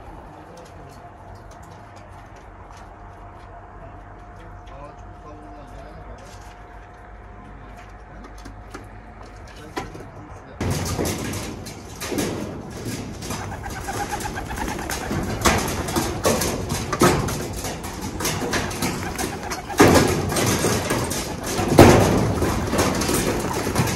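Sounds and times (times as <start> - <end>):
pigeons cooing: 12.1 - 23.9.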